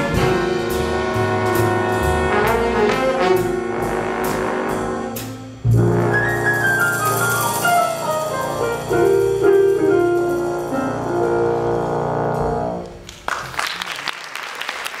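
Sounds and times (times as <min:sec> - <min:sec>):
jazz ensemble with brass and piano: 0:00.0 - 0:13.2
audience applause: 0:13.0 - 0:15.0.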